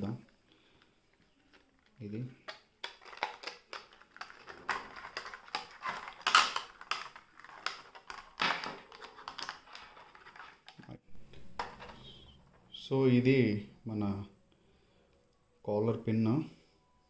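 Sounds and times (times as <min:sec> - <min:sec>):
plastic packaging crinkles and clicks: 0:00.7 - 0:11.0.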